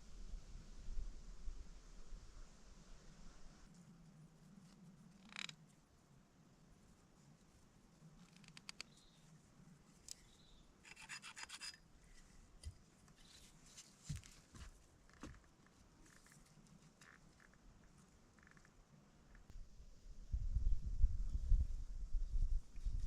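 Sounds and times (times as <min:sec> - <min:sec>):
faint rustles and scratches: 0:03.2 - 0:19.5.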